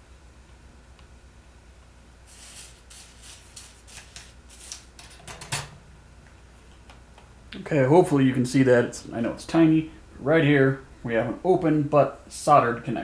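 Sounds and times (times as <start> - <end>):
steady low hum: 0.0 - 13.0
rustling and scraping handling noise: 2.3 - 5.8.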